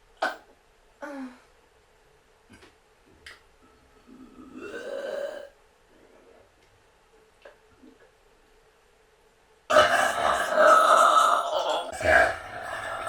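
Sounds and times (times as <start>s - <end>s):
person belching: 4.3s - 5.5s, 9.7s - 13.0s.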